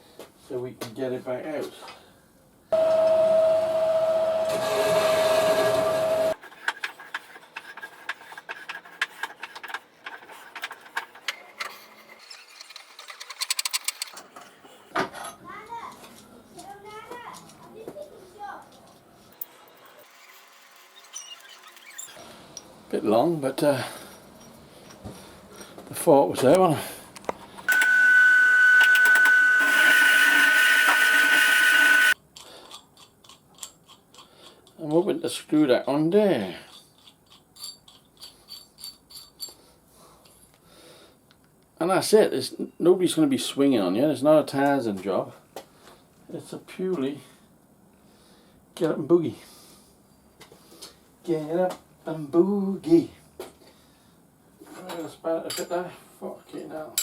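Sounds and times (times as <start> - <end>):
power tool motor whining: 2.8 - 6.4, 27.7 - 32.2
metal work clicks and taps: 32.4 - 34.8.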